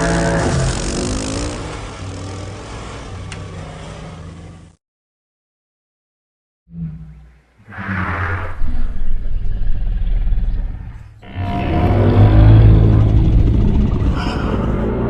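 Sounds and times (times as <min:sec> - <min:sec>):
deep rumbling creature calls: 0:00.0 - 0:02.3, 0:06.7 - 0:15.0.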